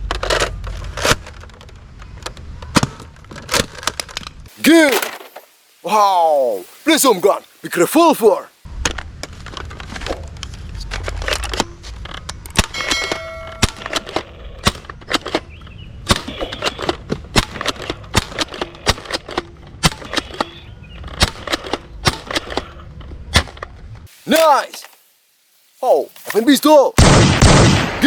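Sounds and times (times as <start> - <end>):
short ringing tone: 12.8 - 13.8.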